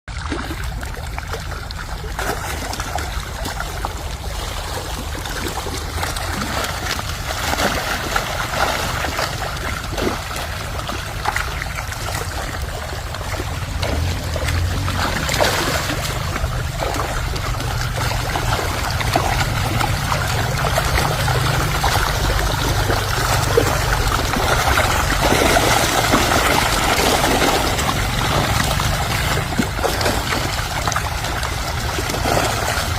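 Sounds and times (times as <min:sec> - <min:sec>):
water splashing and trickling: 0:00.1 - 0:32.9
steady low rumble: 0:09.4 - 0:32.9.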